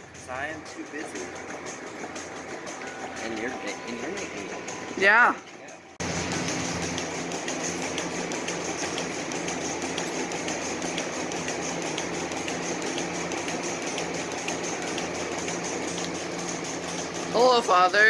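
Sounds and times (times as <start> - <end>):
light regular ticking: 6.4 - 17.4.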